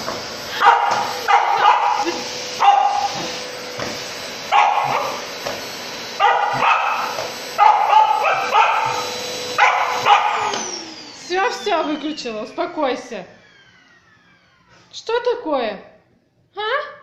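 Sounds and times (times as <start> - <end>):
vacuum cleaner hum: 0.0 - 15.6
dog barking and yipping: 0.5 - 3.4, 4.4 - 5.4, 6.1 - 10.8.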